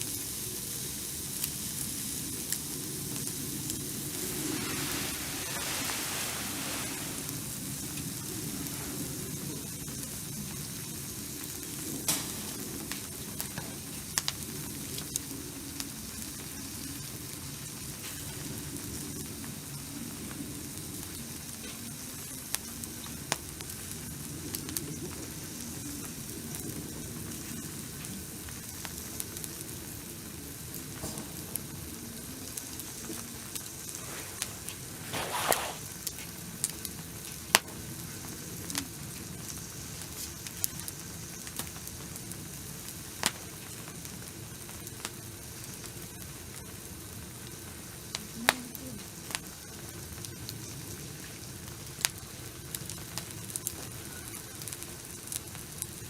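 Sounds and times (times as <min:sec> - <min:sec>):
barbecue sizzling hiss: 0:00.0 - 0:56.0
fire pops and crackles: 0:00.0 - 0:56.0.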